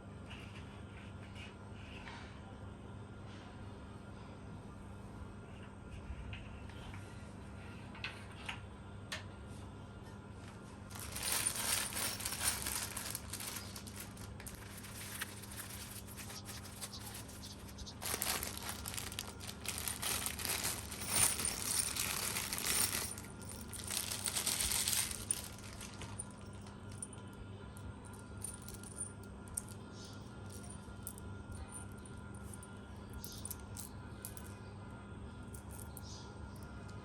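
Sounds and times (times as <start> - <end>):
packaging crinkling and rustling: 10.9 - 26.7.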